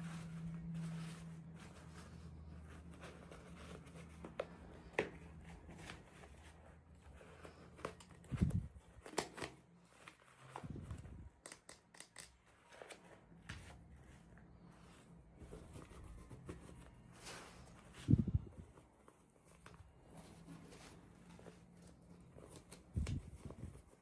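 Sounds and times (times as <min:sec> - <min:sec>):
plastic and paper crinkling: 0:00.0 - 0:24.0
small clicks and taps: 0:11.4 - 0:12.4.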